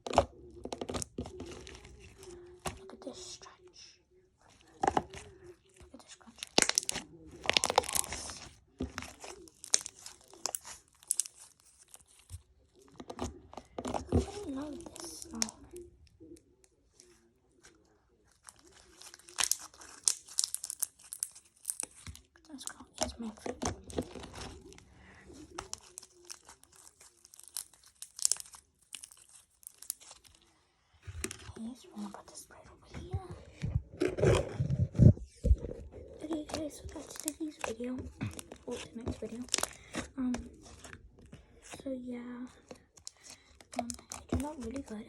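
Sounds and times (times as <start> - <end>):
slime crackling when squeezed: 6.2 - 12.4, 18.3 - 24.7, 25.5 - 30.4, 36.2 - 40.9, 43.0 - 45.0.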